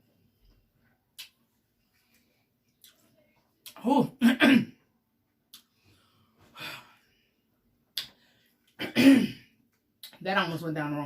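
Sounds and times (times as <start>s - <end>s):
woman coughing: 4.2s - 4.7s, 8.8s - 9.4s
woman breathing heavily: 5.8s - 7.2s.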